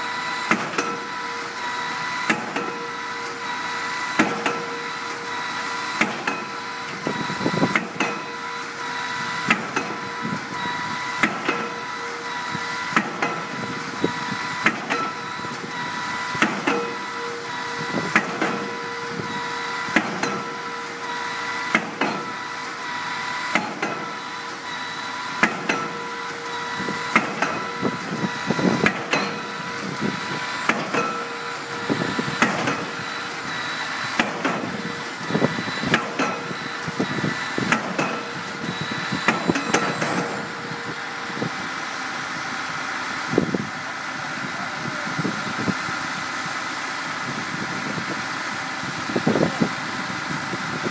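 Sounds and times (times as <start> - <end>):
machinery whine: 0.0 - 50.9
pile-driving hammer striking: 28.6 - 29.5, 34.2 - 34.9, 35.9 - 36.6, 37.7 - 38.3, 39.2 - 40.4.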